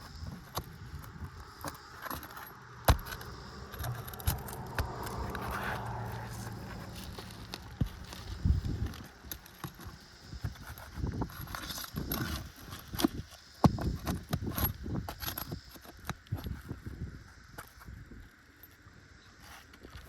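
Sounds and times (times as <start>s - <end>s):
shingles scraping: 0.0s - 10.0s
hand tool knocks and clicks: 1.6s - 5.4s.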